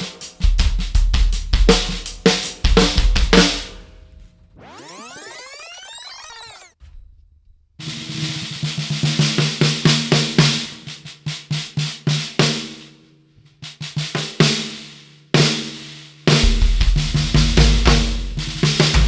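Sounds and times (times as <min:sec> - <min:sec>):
bass drum: 0:16.4 - 0:19.0.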